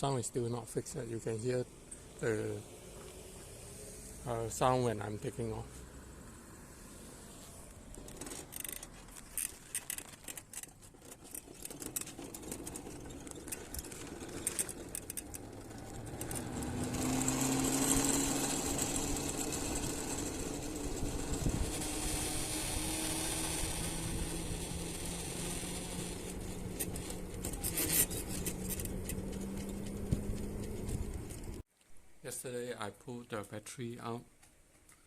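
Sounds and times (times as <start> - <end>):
wind and road noise: 0.5 - 31.7
electric scooter motor droning: 1.7 - 8.8, 11.3 - 31.6
scattered clicks: 25.0 - 31.6.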